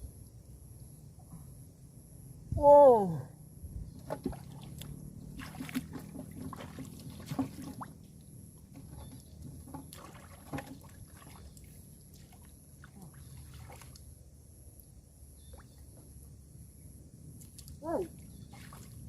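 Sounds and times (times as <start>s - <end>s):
water splashing and sloshing: 4.0s - 14.4s, 17.4s - 19.0s.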